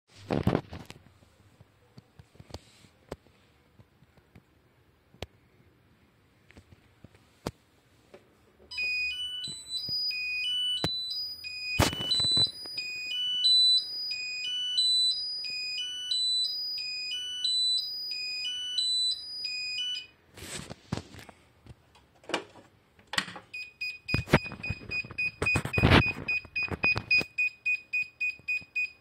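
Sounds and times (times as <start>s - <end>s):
fire alarm stepped melody: 8.7s - 20.1s.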